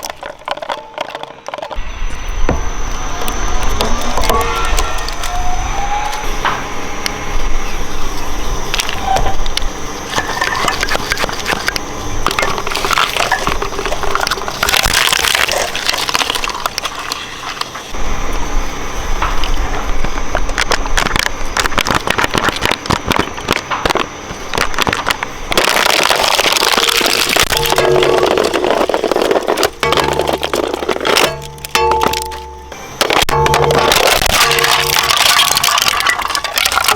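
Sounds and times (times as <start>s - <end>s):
shredder crushing brittle material: 0.0s - 1.8s, 8.7s - 18.5s, 19.1s - 36.9s.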